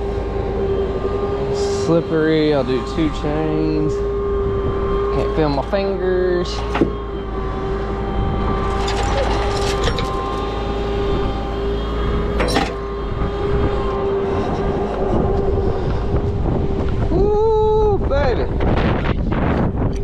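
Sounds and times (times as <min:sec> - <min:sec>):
tow truck whining: 0:00.0 - 0:17.3
wind rumble on microphone: 0:00.0 - 0:20.0
metal chains clanking: 0:08.6 - 0:10.5, 0:12.4 - 0:12.9.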